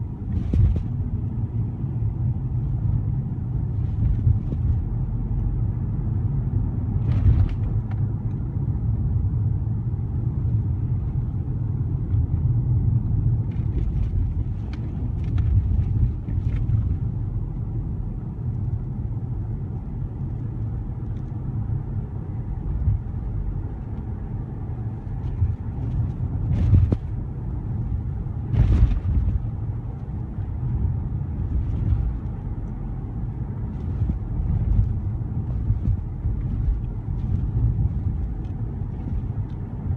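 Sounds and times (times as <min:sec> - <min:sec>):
road and engine rumble: 0:00.0 - 0:39.9.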